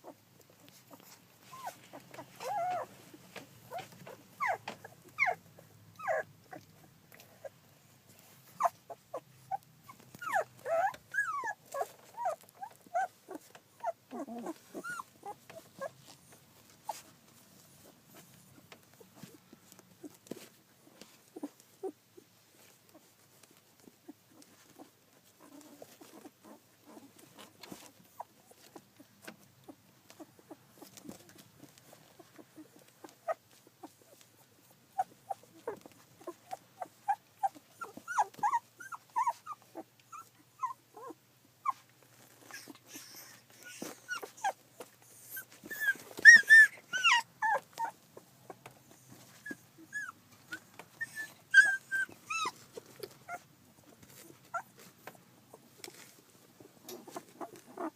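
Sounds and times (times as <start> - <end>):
puppies crying: 0.9 - 3.1, 3.7 - 6.6, 8.6 - 17.0, 35.0 - 48.0, 49.4 - 53.5.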